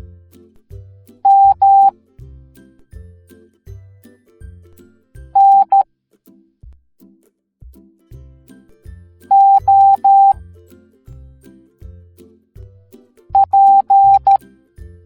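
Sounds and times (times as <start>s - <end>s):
morse code beeps: 1.3s - 1.9s, 5.4s - 5.8s, 9.3s - 10.3s, 13.4s - 14.4s
soft background music: 7.7s - 15.0s.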